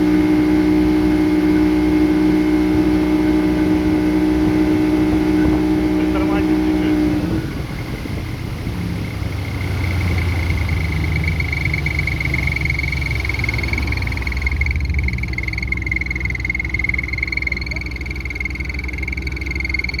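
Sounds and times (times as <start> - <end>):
outboard motor running: 0.0 - 20.0
high-pitched whistle: 11.3 - 20.0.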